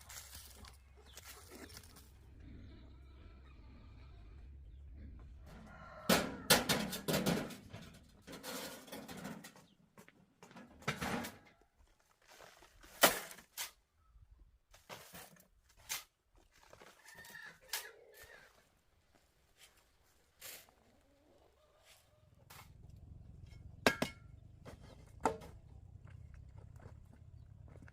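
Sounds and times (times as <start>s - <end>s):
chickens clucking: 20.4s - 23.0s.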